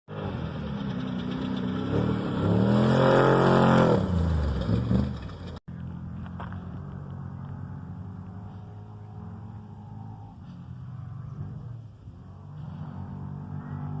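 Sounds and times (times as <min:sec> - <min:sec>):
truck engine revving: 0:00.1 - 0:06.2, 0:06.8 - 0:14.0.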